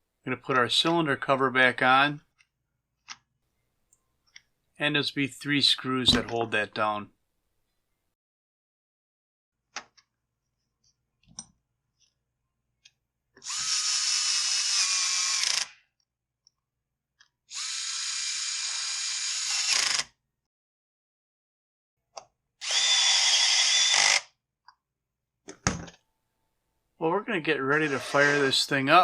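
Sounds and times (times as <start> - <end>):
electric drill-driver whining: 13.4 - 15.8, 17.5 - 20.2, 22.6 - 24.3.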